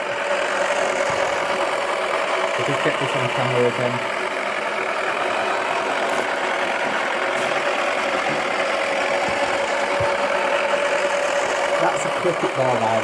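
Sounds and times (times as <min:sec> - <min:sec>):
small electric motor whining: 0:00.0 - 0:13.0.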